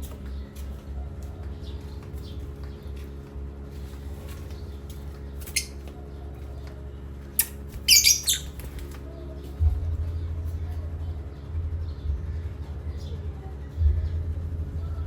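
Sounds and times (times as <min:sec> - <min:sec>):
steady low hum: 0:00.0 - 0:15.0
parrot squawking: 0:05.5 - 0:05.9, 0:07.4 - 0:08.6.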